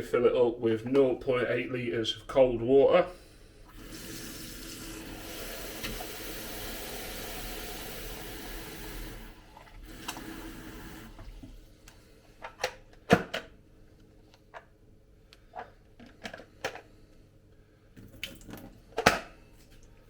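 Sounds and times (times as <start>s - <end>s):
tap water running into kettle: 3.7s - 11.7s.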